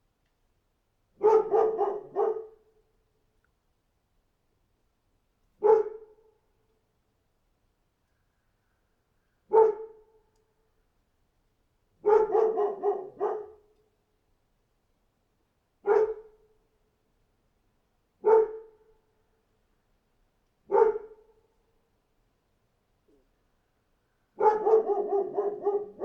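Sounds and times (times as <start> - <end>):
dog barking: 1.2 - 2.6, 5.6 - 6.2, 9.5 - 10.1, 12.0 - 13.7, 15.8 - 16.4, 18.2 - 18.8, 20.7 - 21.3, 24.4 - 26.0.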